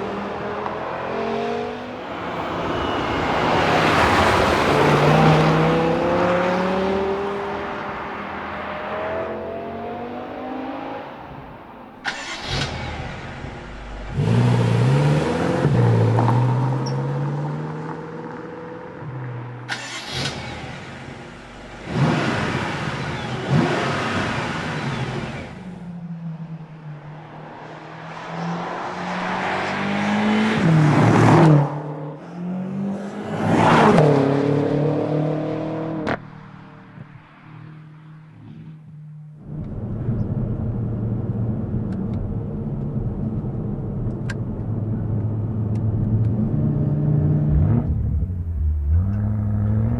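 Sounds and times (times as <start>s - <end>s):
car engine revving: 0.0s - 25.8s, 45.8s - 49.9s.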